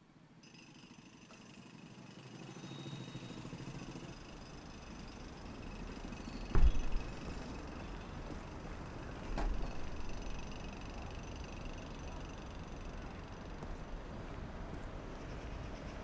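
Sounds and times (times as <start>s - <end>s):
traffic hum: 4.3s - 15.7s
soft thump: 6.5s - 7.4s
sharp knock: 6.6s - 7.2s.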